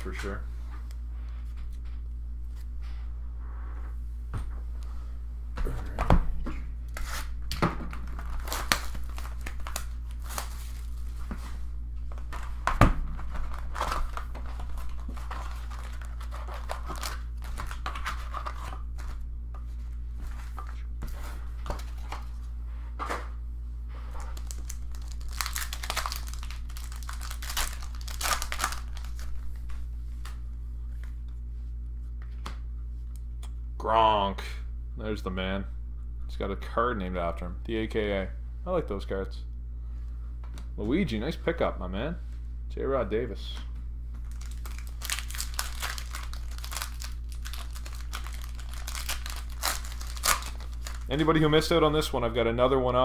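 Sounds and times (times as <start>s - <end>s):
low electrical hum: 0.0s - 53.0s
foil wrappers tearing and crinkling: 6.9s - 11.3s, 12.2s - 19.2s, 24.1s - 29.4s, 44.2s - 51.7s.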